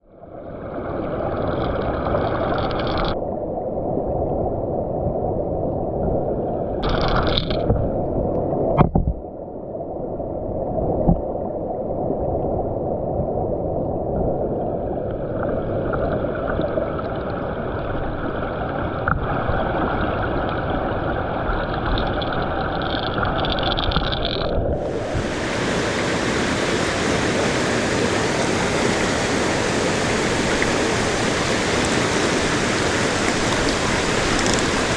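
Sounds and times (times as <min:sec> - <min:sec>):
stream water rushing: 0:00.3 - 0:03.2, 0:06.8 - 0:09.0, 0:14.7 - 0:34.9.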